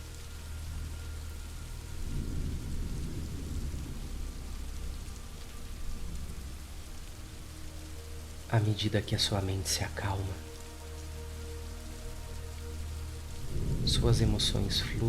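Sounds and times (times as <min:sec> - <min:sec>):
steady rain hiss: 0:00.0 - 0:15.0
low roll of thunder: 0:01.9 - 0:07.1, 0:13.4 - 0:15.0.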